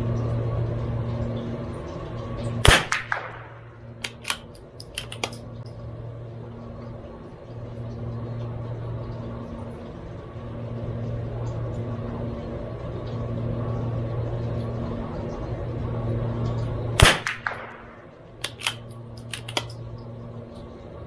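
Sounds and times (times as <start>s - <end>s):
low hum: 0.0s - 21.0s
rifle shot with echo: 2.6s - 4.5s, 17.0s - 19.6s
rifle bolt clicks: 2.7s - 5.4s, 17.0s - 19.8s.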